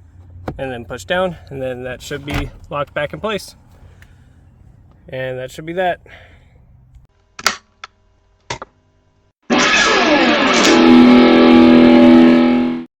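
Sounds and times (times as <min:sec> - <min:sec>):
loud guitar music: 0:09.5 - 0:12.8.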